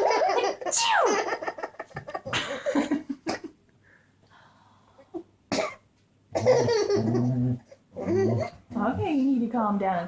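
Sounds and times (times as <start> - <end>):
baby laughing: 0.0 - 2.4, 6.4 - 7.3, 8.0 - 8.6.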